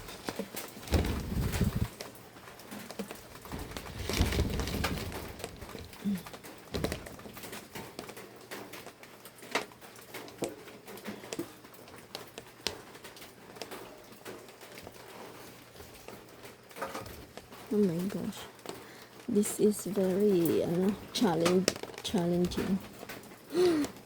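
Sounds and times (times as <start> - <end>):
rustling: 0.0 - 9.0
objects knocking and clattering: 0.0 - 18.8.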